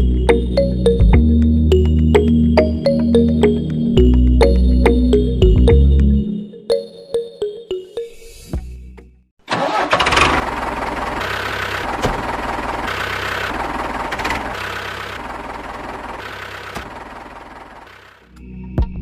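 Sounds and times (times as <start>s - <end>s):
engine running: 9.5s - 18.3s.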